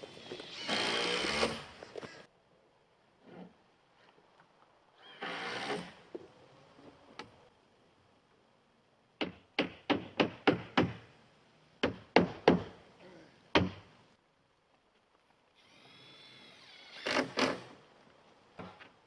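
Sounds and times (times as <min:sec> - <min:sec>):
hammer striking nail into wood: 0:09.2 - 0:11.0.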